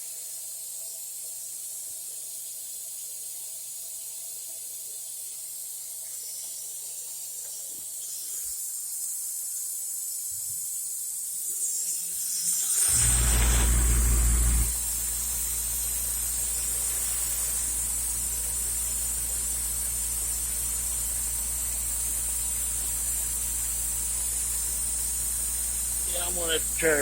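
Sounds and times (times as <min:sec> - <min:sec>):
router spindle whine: 0:11.7 - 0:27.0
loud low hum: 0:12.9 - 0:16.9.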